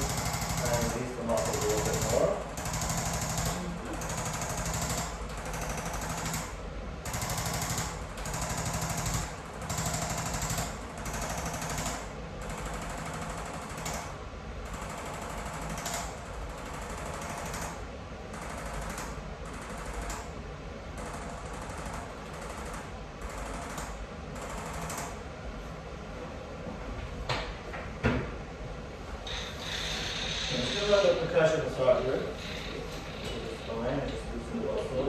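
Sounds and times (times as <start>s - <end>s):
motor hum: 0.0s - 5.2s, 29.2s - 35.0s.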